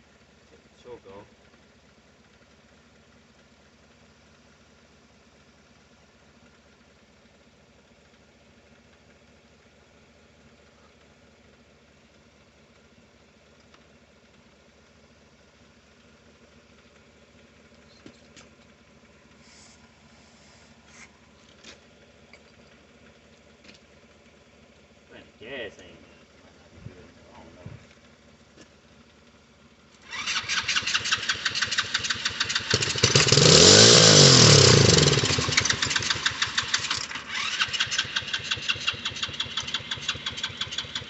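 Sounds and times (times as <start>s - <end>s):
small engine idling: 0.0s - 41.0s.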